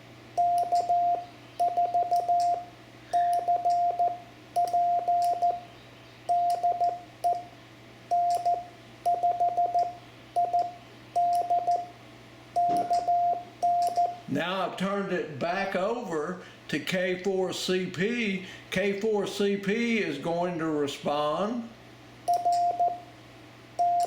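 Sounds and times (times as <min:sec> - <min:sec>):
morse code tone: 0:00.4 - 0:05.7, 0:06.3 - 0:07.5, 0:08.1 - 0:11.9, 0:12.6 - 0:14.2, 0:22.3 - 0:23.1, 0:23.8 - 0:24.0.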